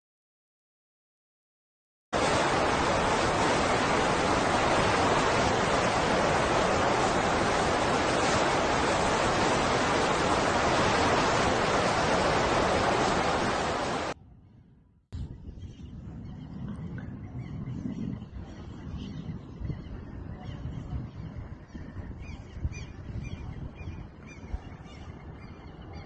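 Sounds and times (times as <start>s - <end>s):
storm rushing noise: 2.2s - 14.2s.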